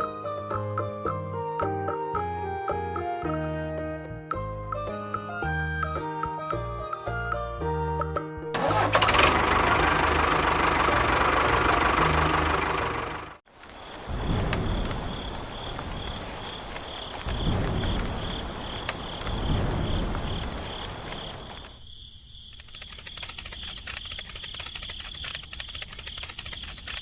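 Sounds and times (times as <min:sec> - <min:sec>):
cricket chirping: 0:13.6 - 0:27.0.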